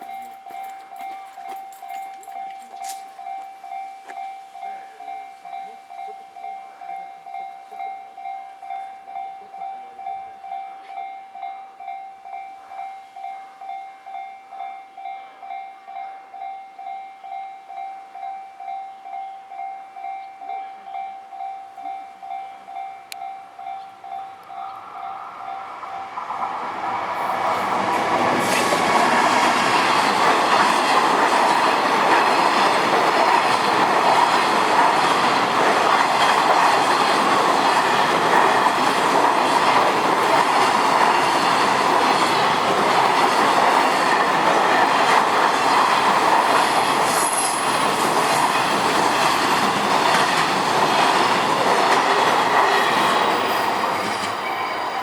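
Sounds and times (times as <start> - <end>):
level crossing warning bell: 0.0 - 55.0
train wheels rumbling on rails: 24.0 - 55.0.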